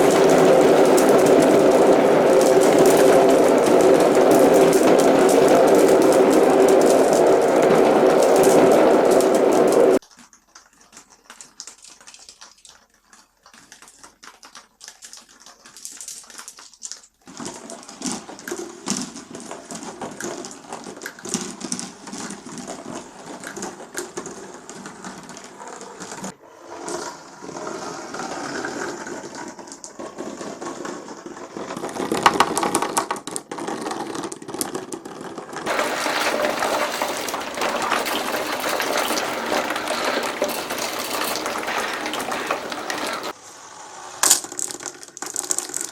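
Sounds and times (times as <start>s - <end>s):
glass marbles rolling and clacking: 0.0s - 10.1s, 31.8s - 43.4s, 44.2s - 45.9s.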